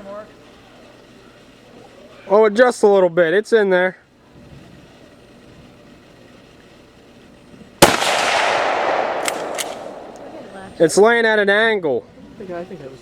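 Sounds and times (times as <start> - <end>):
loud explosive blast: 7.8 - 10.9.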